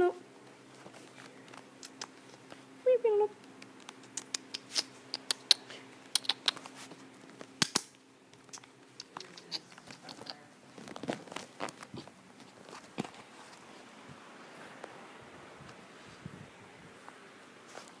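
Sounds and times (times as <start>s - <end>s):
rustling: 8.4s - 15.0s, 15.6s - 18.0s.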